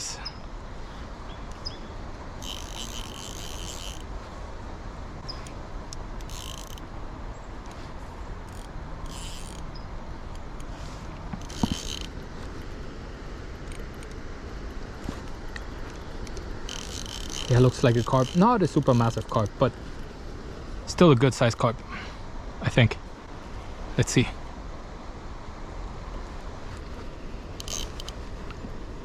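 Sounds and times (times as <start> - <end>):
steady background hiss: 0.0 - 29.0
fishing reel drag buzzing: 2.4 - 4.1, 6.2 - 6.9, 8.4 - 12.3, 15.8 - 20.1, 27.6 - 28.2.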